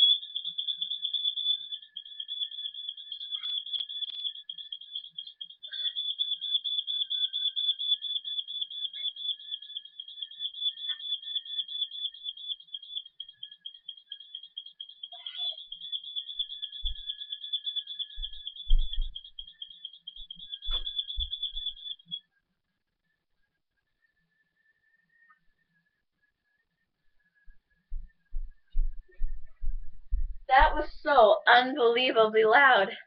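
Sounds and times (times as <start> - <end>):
smoke detector alarm beeping: 0.0 - 22.2.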